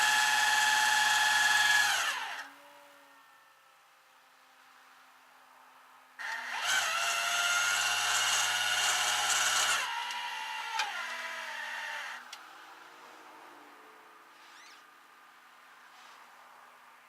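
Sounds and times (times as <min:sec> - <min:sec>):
motor whining: 0:00.0 - 0:03.2, 0:06.2 - 0:12.2.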